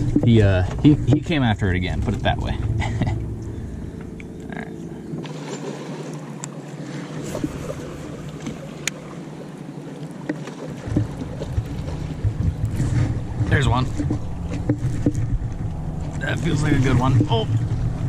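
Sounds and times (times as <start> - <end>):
water around boat hull: 0.0 - 18.0
wind on microphone: 10.8 - 18.0.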